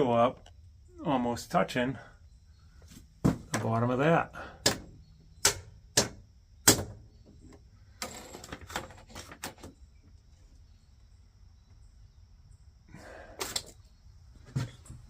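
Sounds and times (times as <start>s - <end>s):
sharp knocks and clicks: 4.6s - 9.8s.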